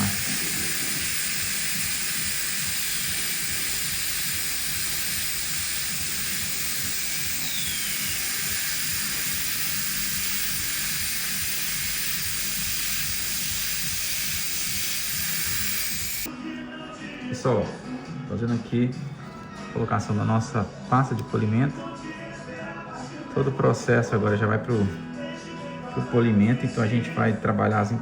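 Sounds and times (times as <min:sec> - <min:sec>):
dental equipment hissing: 0:00.0 - 0:16.3.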